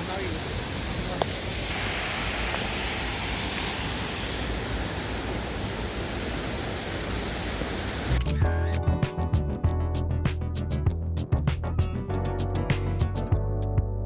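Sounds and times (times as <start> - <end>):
waterfall rushing: 0.0 - 8.2.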